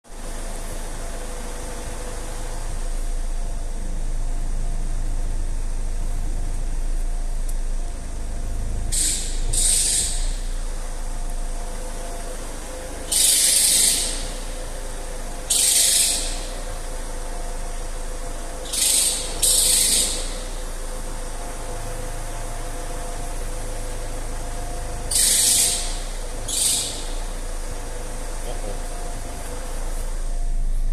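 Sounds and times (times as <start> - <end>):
diesel engine idling: 0.0 - 30.9
short hissing belt squeals: 8.8 - 30.7.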